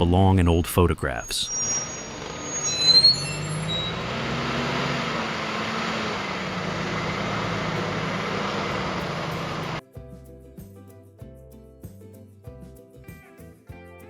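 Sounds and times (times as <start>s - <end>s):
mechanical rumble: 1.5s - 9.8s.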